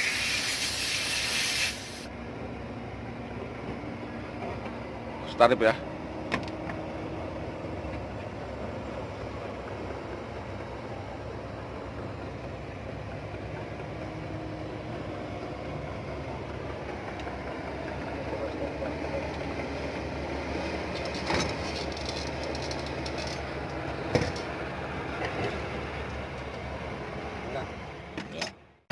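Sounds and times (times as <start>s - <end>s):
excavator diesel engine running: 0.0s - 28.7s.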